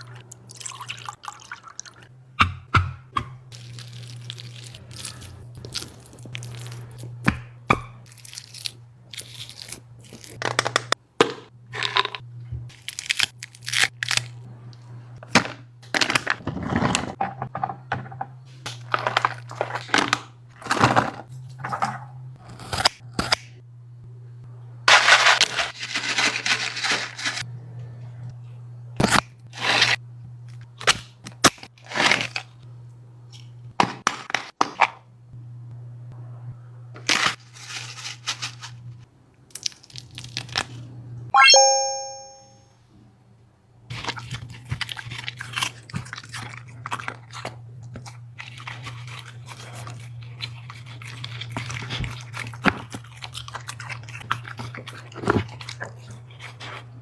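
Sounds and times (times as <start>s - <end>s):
dog chewing and crunching: 43.9s - 57.0s.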